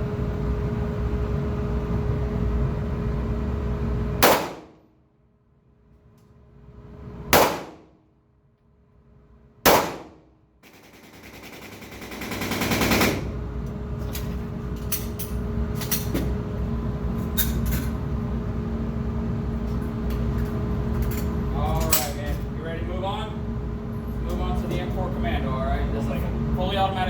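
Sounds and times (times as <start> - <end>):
pistol shots: 4.2 - 4.8, 7.4 - 7.9, 9.7 - 10.3.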